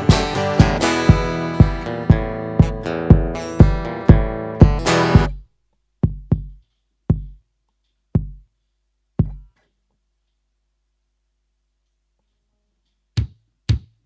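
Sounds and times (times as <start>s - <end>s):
foot percussion box stomps: 0.1s - 5.4s, 6.0s - 7.4s, 8.2s - 8.5s, 9.2s - 9.6s, 13.2s - 14.0s.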